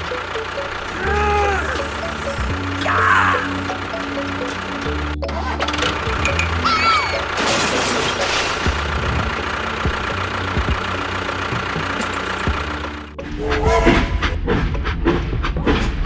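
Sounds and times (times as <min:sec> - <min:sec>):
gliding tone: 0:00.0 - 0:06.1, 0:13.2 - 0:16.0
motor running: 0:00.0 - 0:15.3.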